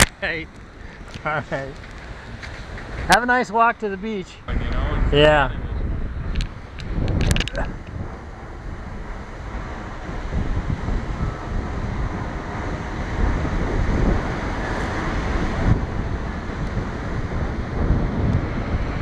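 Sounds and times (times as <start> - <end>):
wind buffeting microphone: 0.0 - 19.0.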